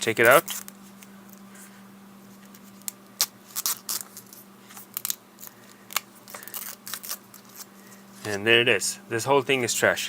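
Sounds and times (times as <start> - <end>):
tape peeling scratchy clicks: 0.0 - 1.4, 2.4 - 8.4
faint hum: 0.0 - 10.0.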